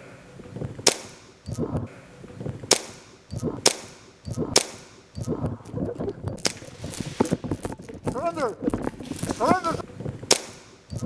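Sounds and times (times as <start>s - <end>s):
low muffled noises: 0.0s - 11.0s
airsoft gun shots: 0.8s - 1.3s, 2.7s - 5.0s, 10.3s - 10.7s.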